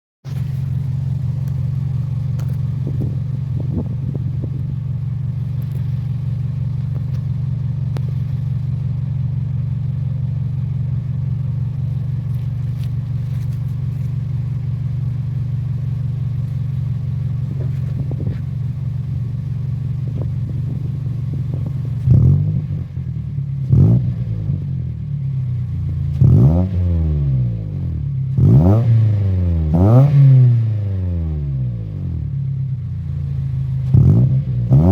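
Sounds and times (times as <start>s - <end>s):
car engine idling: 0.2s - 34.9s
engine revving: 20.1s - 25.0s, 26.1s - 32.3s, 33.3s - 34.9s.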